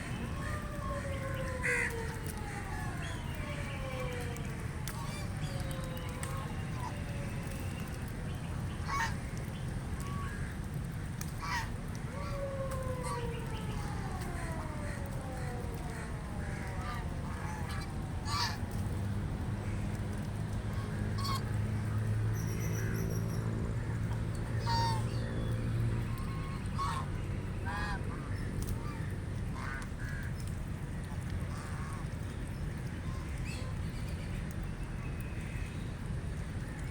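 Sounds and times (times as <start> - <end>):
outdoor background noise: 0.0 - 36.9
ducks quacking: 8.8 - 9.2, 24.6 - 25.1, 26.1 - 28.2.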